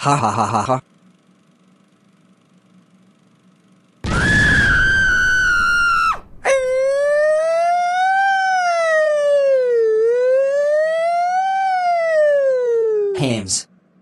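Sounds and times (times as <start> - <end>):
siren-like wail: 4.0 - 13.2
high-pitched scream: 4.1 - 13.2.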